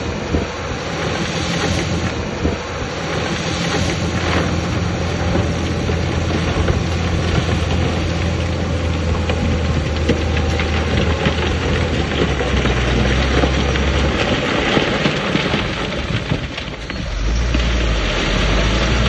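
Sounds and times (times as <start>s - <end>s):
heavy diesel machinery running: 0.0s - 19.0s
clatter of stone and metal: 0.3s - 19.0s.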